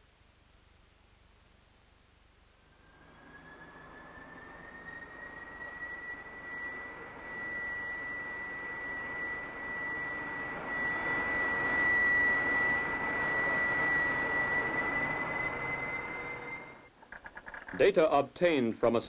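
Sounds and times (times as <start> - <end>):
jet engine high whine: 2.4 - 17.7
rushing air noise: 2.7 - 16.9.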